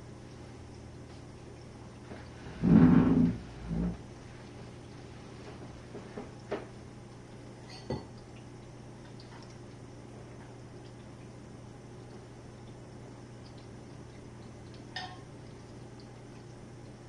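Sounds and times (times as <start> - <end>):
dishwasher humming: 0.0 - 17.0
dishes clinking: 7.6 - 8.1, 15.0 - 15.3.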